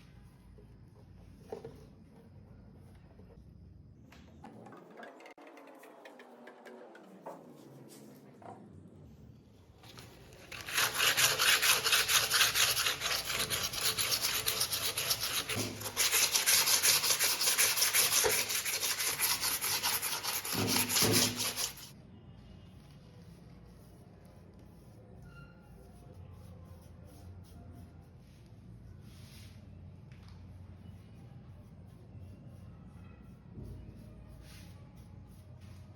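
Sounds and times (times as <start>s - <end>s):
sanding a hard surface: 9.9s - 22.0s.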